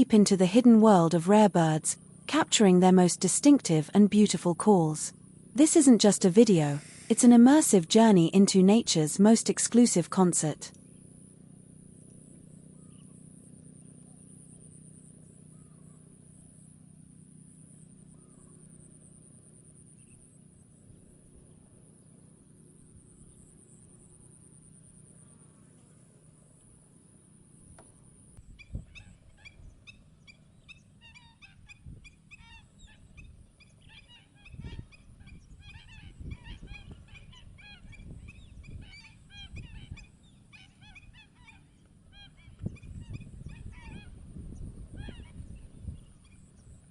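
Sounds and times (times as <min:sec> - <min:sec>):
high-pitched pulsing buzz: 0:00.0 - 0:46.9
flock of wetland birds calling: 0:31.0 - 0:44.2.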